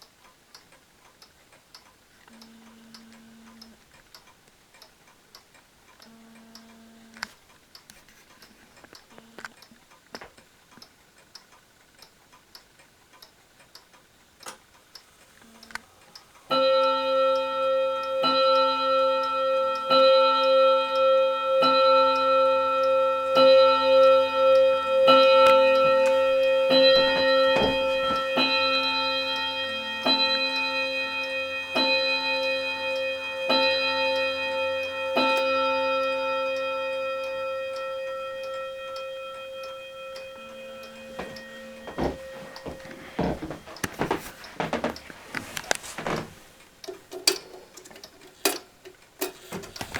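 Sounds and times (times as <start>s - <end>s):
wall clock ticking: 0.0s - 49.9s
clock bell striking: 16.5s - 45.7s.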